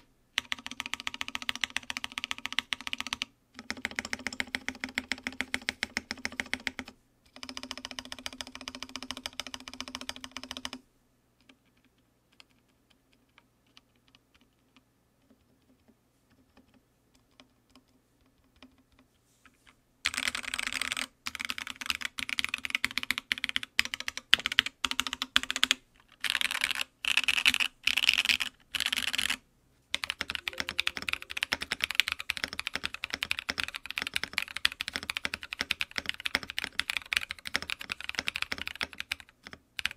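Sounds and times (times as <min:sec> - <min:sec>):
typing on mechanical keyboard: 0:00.0 - 0:10.8, 0:20.1 - 0:39.9.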